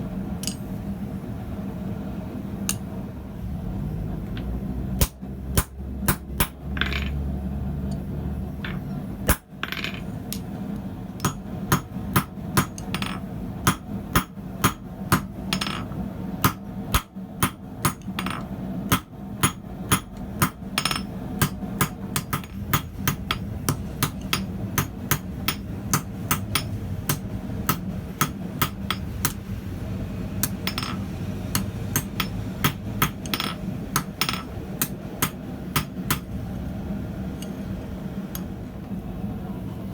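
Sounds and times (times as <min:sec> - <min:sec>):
hammer striking metal on anvil: 0:11.2 - 0:29.4, 0:30.4 - 0:36.3.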